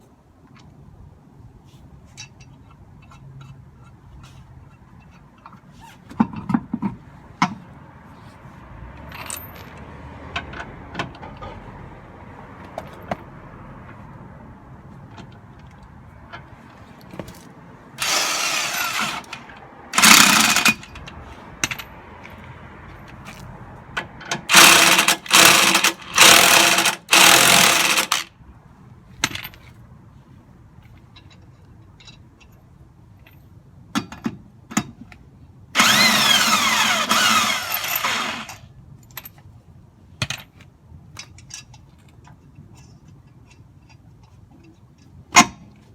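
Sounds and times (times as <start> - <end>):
impact wrench bursts: 18.0 - 21.0, 24.5 - 28.3, 35.8 - 38.6
hand tools clicking: 18.0 - 21.2, 24.5 - 28.3.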